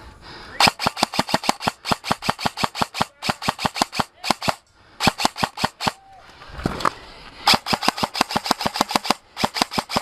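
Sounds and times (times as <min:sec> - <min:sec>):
airsoft gun rapid shots: 0:00.6 - 0:06.0, 0:07.5 - 0:10.0.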